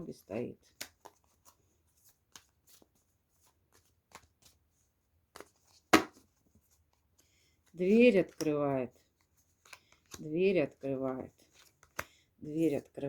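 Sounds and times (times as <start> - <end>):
cards flicking and tapping: 0.6 - 1.3, 2.2 - 2.8, 3.7 - 4.6, 5.3 - 6.3, 9.5 - 10.3, 11.4 - 12.2
card slapping on table: 5.4 - 6.2.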